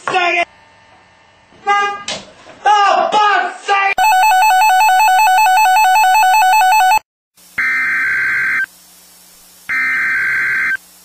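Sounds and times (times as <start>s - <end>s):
electronic ring tone trilling: 4.0s - 7.0s
screechy data bursts: 9.7s - 10.8s.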